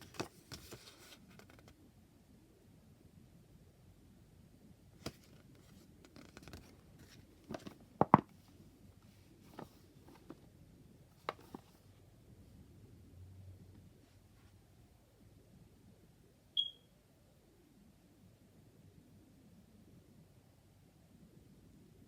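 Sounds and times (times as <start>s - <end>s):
cards and cardboard tapping: 7.5s - 8.3s.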